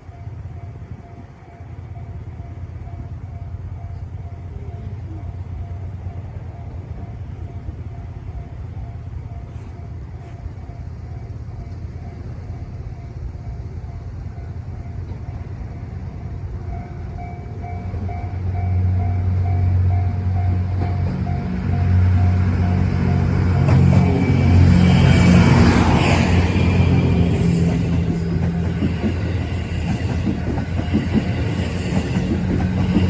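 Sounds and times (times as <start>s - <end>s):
level-crossing warning bell: 0.0s - 33.0s
train rumbling: 0.0s - 33.0s.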